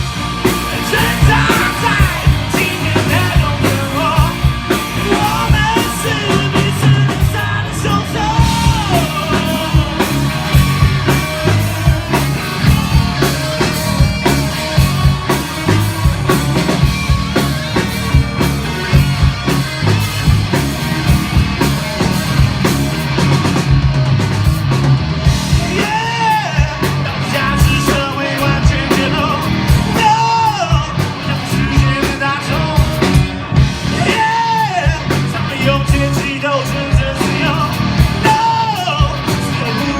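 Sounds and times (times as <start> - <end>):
rock band playing live: 0.0 - 39.9
person singing: 0.7 - 16.7, 25.5 - 33.2, 33.9 - 39.9.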